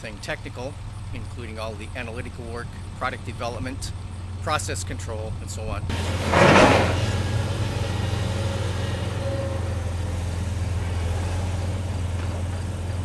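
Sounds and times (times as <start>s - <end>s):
heavy machine engine droning: 0.0s - 13.0s
loud crash: 5.9s - 10.5s.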